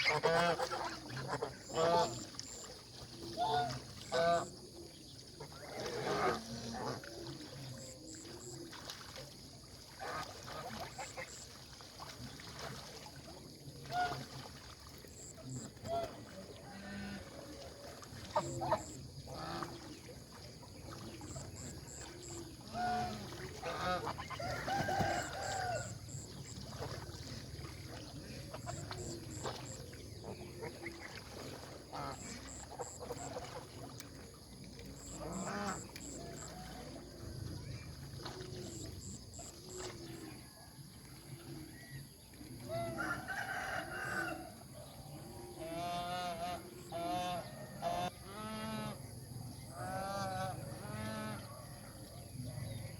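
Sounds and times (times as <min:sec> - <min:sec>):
poultry calling: 0:00.0 - 0:02.2
low goose calls: 0:00.0 - 0:08.6, 0:15.2 - 0:20.1, 0:20.7 - 0:27.0, 0:27.6 - 0:34.0, 0:34.9 - 0:37.0, 0:45.4 - 0:49.0, 0:49.7 - 0:51.6
geese splashing in water: 0:00.0 - 0:52.9.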